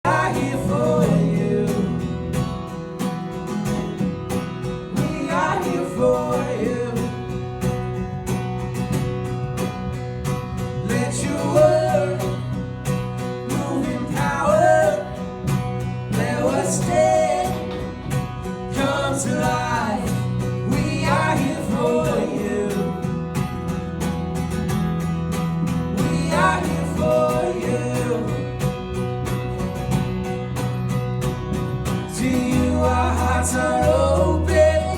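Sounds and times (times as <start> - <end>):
person singing: 10.9 - 12.5, 32.2 - 34.9
worship band playing: 13.5 - 23.4, 31.8 - 34.9.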